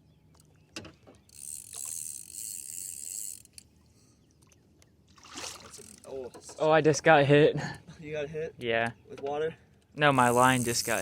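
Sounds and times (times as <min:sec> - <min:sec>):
fishing reel drag buzzing: 0:01.3 - 0:03.8, 0:10.1 - 0:11.0.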